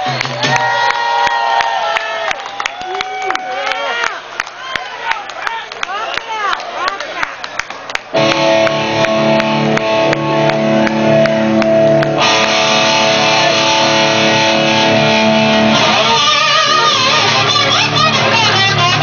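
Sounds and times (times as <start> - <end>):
electric guitar through amplifier: 8.1 - 19.0.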